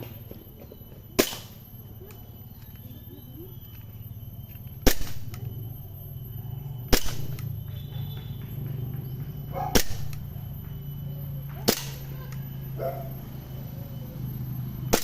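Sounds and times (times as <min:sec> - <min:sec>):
steady low hum: 0:00.0 - 0:15.0
airsoft gun shots: 0:01.2 - 0:01.6, 0:04.8 - 0:05.4, 0:06.9 - 0:07.5, 0:09.7 - 0:10.3, 0:11.6 - 0:12.2.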